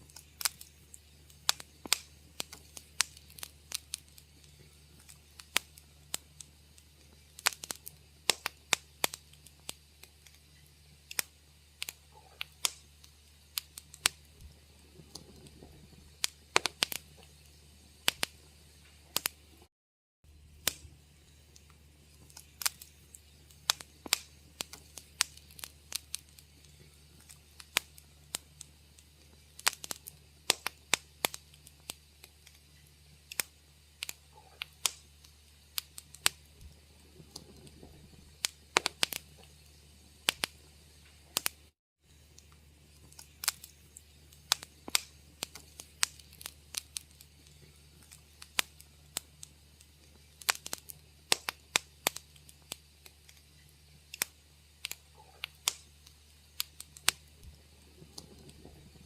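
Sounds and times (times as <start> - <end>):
faint steady low hum: 0.0 - 19.7, 20.3 - 59.0
wood fire crackling: 0.0 - 19.7, 20.3 - 59.0.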